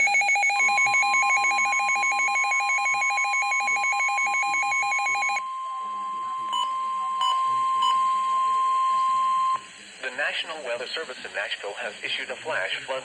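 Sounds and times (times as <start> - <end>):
rapid two-tone alarm beeping: 0.0 - 9.6
steady warning alarm tone: 0.0 - 9.6.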